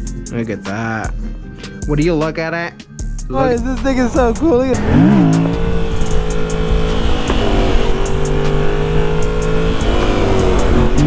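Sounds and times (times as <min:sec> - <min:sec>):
motorcycle engine running: 0:03.4 - 0:11.0.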